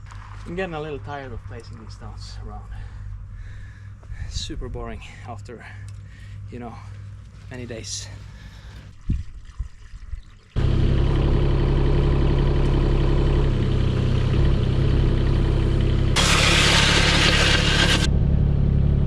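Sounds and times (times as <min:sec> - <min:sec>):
excavator engine running: 0:10.6 - 0:19.0
loud hiss: 0:16.2 - 0:18.1.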